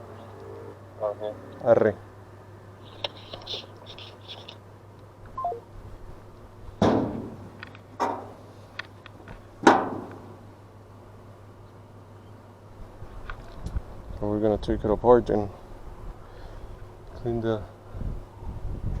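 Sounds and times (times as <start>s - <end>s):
faint high chirps: 5.4s - 5.7s
loud knocks with ringing: 6.8s - 7.4s.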